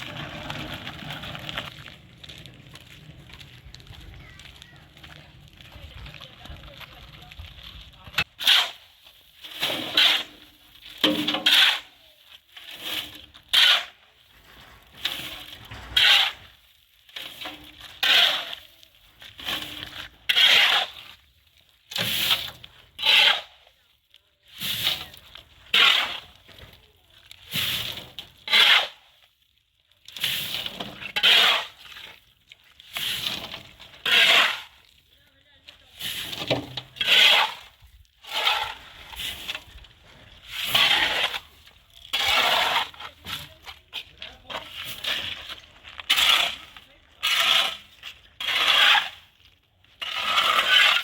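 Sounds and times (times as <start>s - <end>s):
rough rasping scraping: 8.0s - 21.2s, 21.9s - 23.6s, 24.6s - 26.7s, 27.4s - 29.1s, 30.2s - 32.1s, 32.9s - 35.0s, 35.9s - 51.0s.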